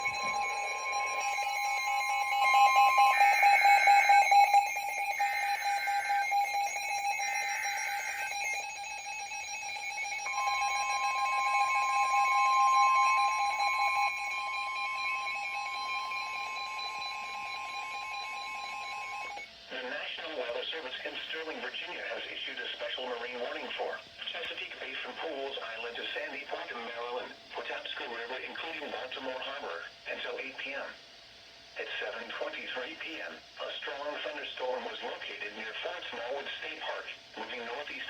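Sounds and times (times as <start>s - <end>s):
warbling data tones: 0.0s - 19.4s
shrill two-tone alert signal: 0.0s - 19.5s.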